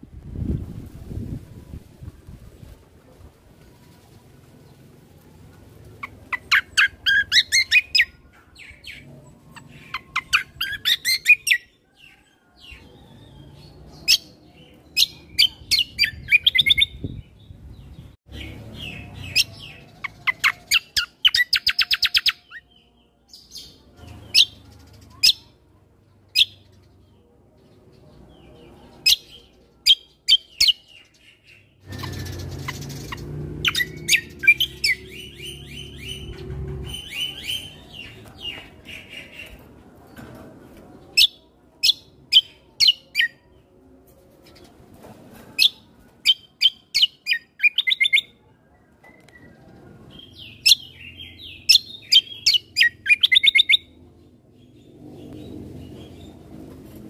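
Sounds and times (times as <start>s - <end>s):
bird chirping trills: 6.0s - 39.6s, 45.6s - 48.4s, 50.2s - 54.0s.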